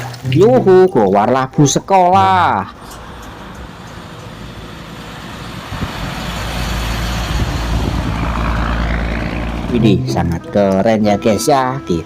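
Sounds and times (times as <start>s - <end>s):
vehicle engine running: 2.2s - 11.2s.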